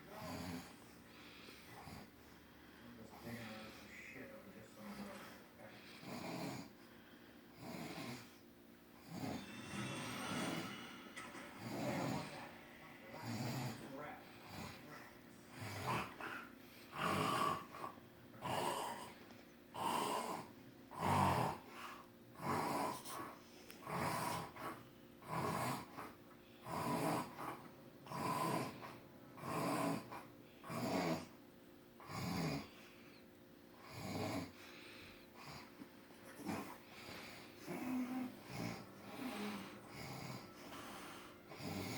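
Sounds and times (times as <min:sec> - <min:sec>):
man snoring: 0:00.1 - 0:00.8, 0:05.8 - 0:06.8, 0:07.5 - 0:08.4, 0:09.0 - 0:14.9, 0:15.5 - 0:19.2, 0:19.8 - 0:31.4, 0:32.0 - 0:32.7, 0:33.8 - 0:34.6, 0:36.4 - 0:41.9.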